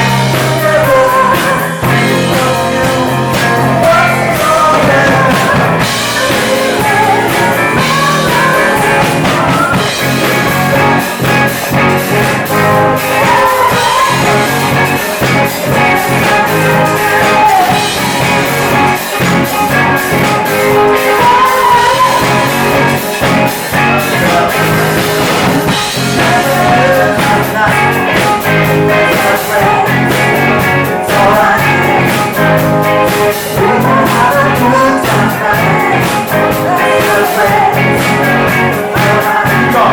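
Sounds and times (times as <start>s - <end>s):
live rock band playing: 0.0s - 39.9s
person singing: 0.0s - 39.9s.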